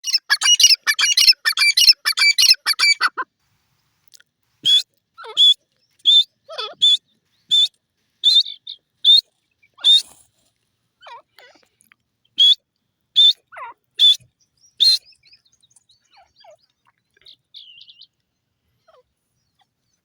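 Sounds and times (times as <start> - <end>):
francolin calling: 0.0 - 3.2, 4.6 - 10.2, 13.2 - 18.2.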